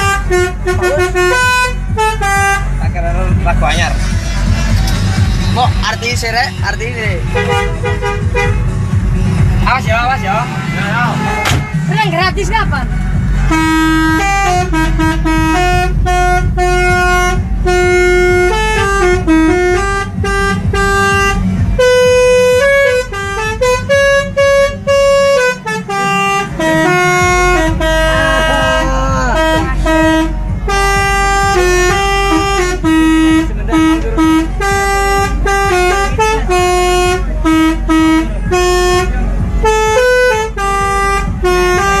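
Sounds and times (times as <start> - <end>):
multi-tone horn playing a tune: 0.0 - 2.8, 7.2 - 8.8, 13.4 - 42.0
steady low rumble: 0.0 - 42.0.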